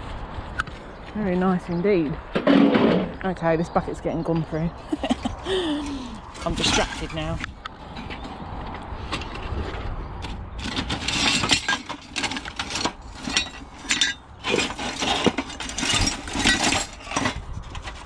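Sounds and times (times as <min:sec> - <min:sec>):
metal scrap clinking and rattling: 0:05.0 - 0:08.4, 0:09.1 - 0:09.4, 0:10.2 - 0:18.0.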